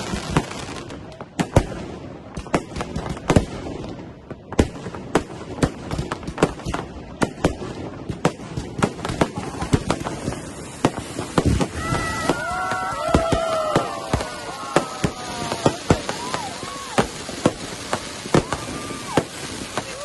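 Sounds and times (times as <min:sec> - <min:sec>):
fireworks whistling: 0:00.0 - 0:01.6, 0:06.2 - 0:20.0
fireworks bangs and crackles: 0:00.0 - 0:20.0.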